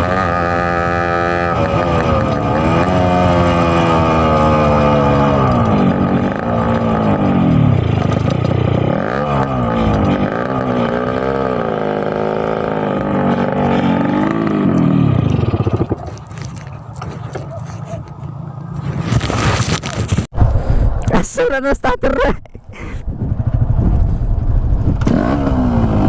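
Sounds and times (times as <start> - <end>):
two-stroke motorcycle engine revving: 0.0 - 16.4, 24.6 - 26.0.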